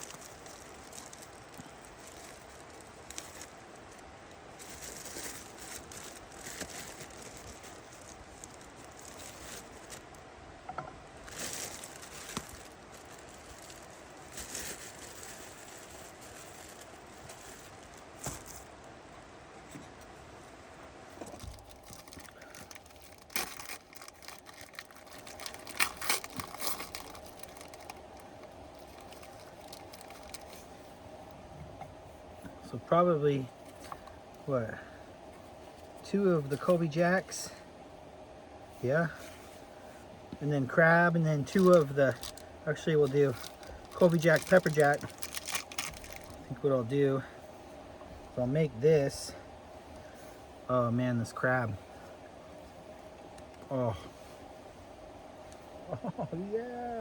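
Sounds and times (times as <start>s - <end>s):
plastic packaging crinkling and tearing: 0.0s - 4.0s, 4.6s - 10.2s, 11.2s - 18.6s, 21.3s - 30.7s, 41.5s - 46.5s.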